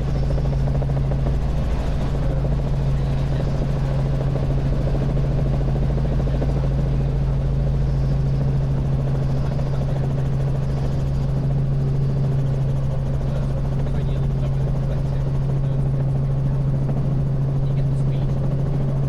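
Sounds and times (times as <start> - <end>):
helicopter engine and rotors droning: 0.0 - 19.0.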